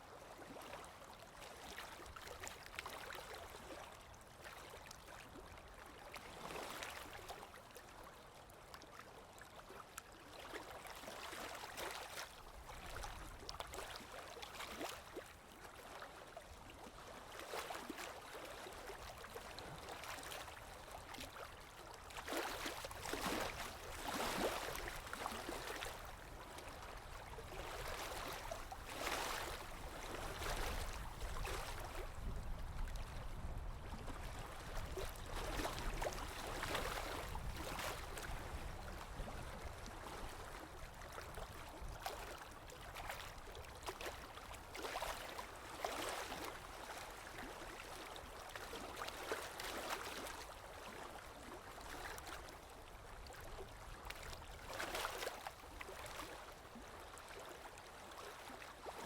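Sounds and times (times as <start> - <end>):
sea waves washing and lapping: 19.1 - 40.7, 41.3 - 50.6.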